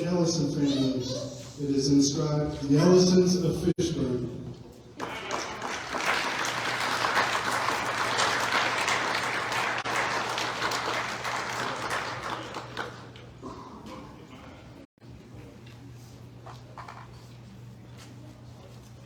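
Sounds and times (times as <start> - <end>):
audience applauding: 5.0 - 13.4.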